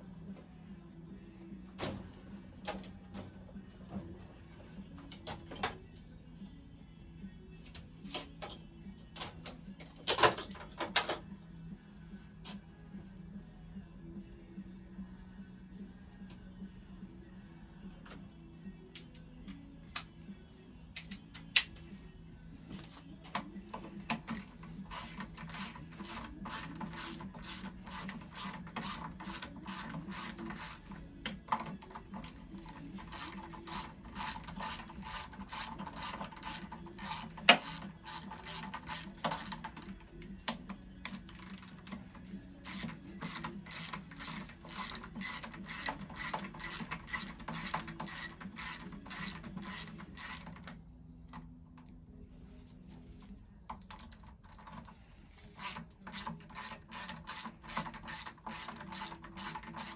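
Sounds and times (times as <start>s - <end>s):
ratchet wrench clicking: 24.1s - 31.0s, 31.6s - 40.0s, 41.1s - 41.9s, 42.6s - 50.6s, 55.6s - 59.9s.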